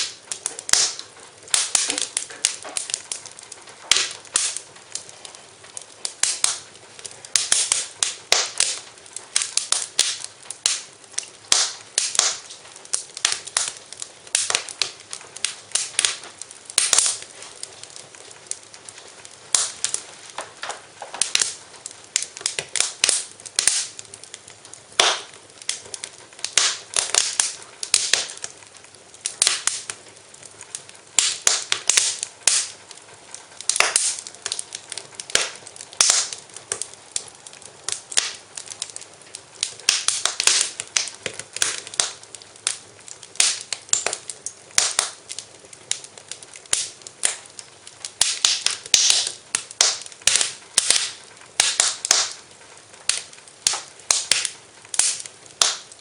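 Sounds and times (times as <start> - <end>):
wood fire crackling and popping: 0.0 - 56.0.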